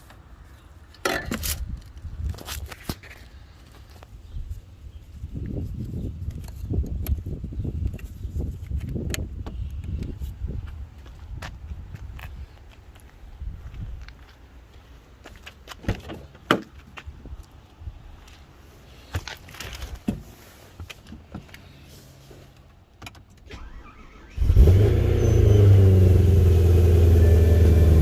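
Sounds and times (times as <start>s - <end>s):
car engine starting and idling: 23.4s - 28.0s.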